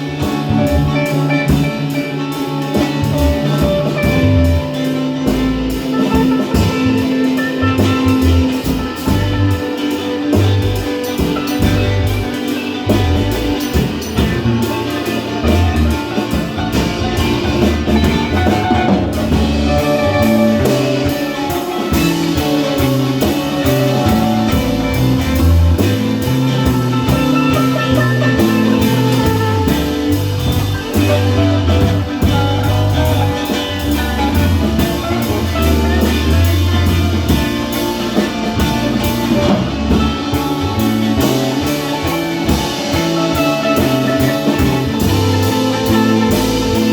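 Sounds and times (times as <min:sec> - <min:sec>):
rock music with guitar and drums: 0:00.0 - 0:46.9.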